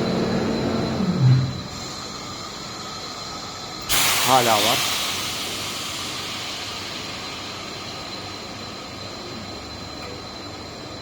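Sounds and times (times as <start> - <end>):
gas hissing from a line: 3.8 - 9.4.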